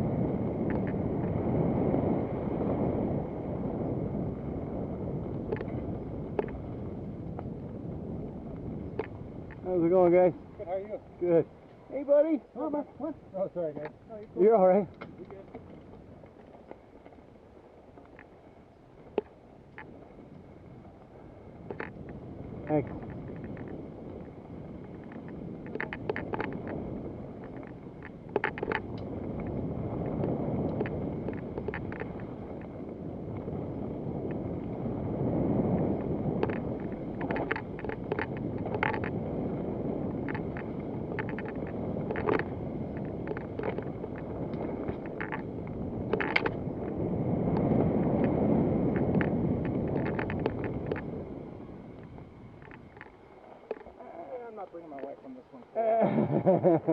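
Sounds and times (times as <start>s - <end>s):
wind buffeting microphone: 0.0s - 56.9s
bicycle clicks and rattles: 0.6s - 1.3s, 5.3s - 7.6s, 8.5s - 10.0s, 13.7s - 18.4s, 19.0s - 20.5s, 21.6s - 34.8s, 35.5s - 54.0s.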